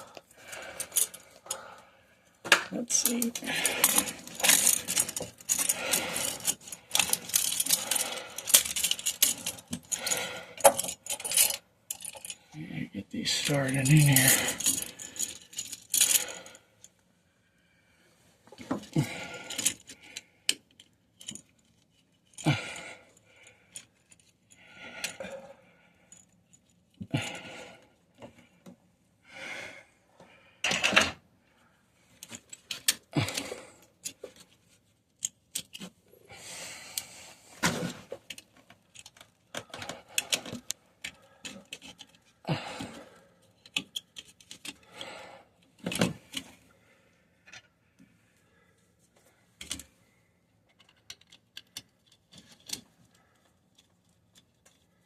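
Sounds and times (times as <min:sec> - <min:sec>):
metal clinks and rattles: 0:00.4 - 0:01.6, 0:02.5 - 0:12.6, 0:13.3 - 0:16.9, 0:18.6 - 0:25.2, 0:37.9 - 0:44.9.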